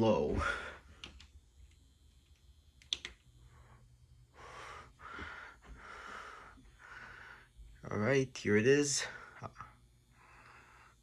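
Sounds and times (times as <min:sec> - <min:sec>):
ceiling fan motor humming: 0:00.0 - 0:11.0
breathing close to microphone: 0:03.5 - 0:07.6.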